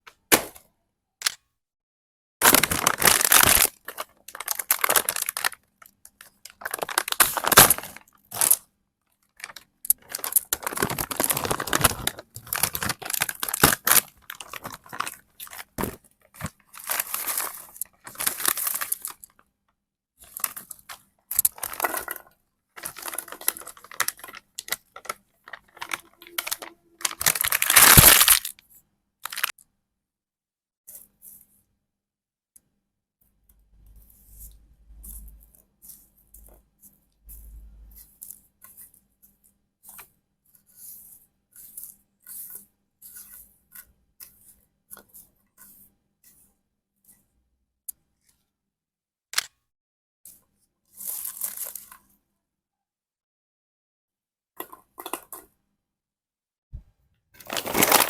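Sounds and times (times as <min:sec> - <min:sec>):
chip packets tearing and crinkling: 0:02.4 - 0:05.6, 0:06.2 - 0:08.6, 0:09.4 - 0:19.3, 0:22.8 - 0:28.6, 0:29.2 - 0:29.5, 0:57.4 - 0:58.0.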